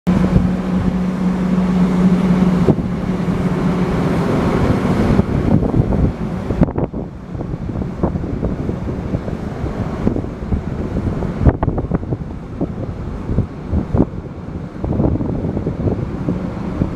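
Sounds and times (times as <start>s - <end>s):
combine harvester running: 0.1s - 7.3s
wind on microphone: 0.1s - 16.9s.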